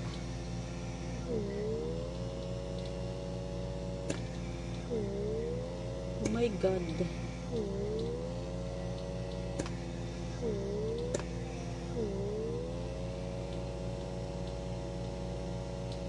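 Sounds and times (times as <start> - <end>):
small vacuum motor whine: 0.0 - 16.0
sharp clicks: 2.2 - 3.0, 6.2 - 9.8, 10.7 - 11.4.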